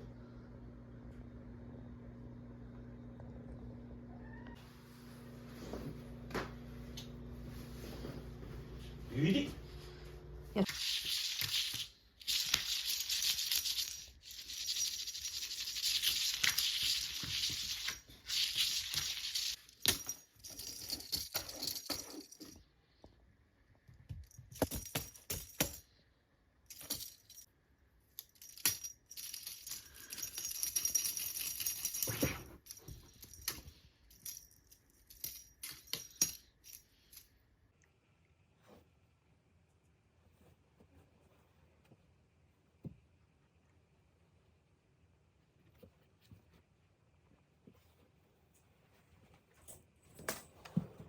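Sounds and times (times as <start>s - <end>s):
small hard objects rattling: 10.6s - 22.3s.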